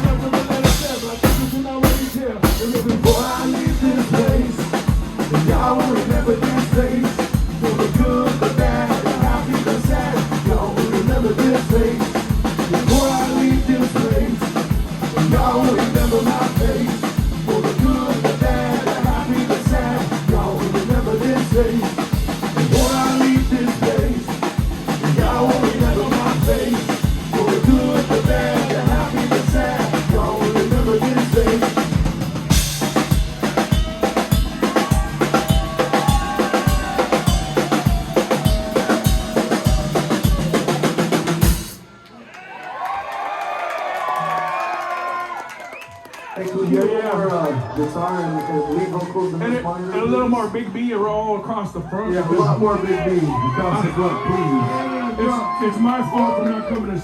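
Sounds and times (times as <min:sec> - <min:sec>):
live band playing instrumental: 0:00.0 - 0:41.9
cymbal crash: 0:32.2 - 0:41.8.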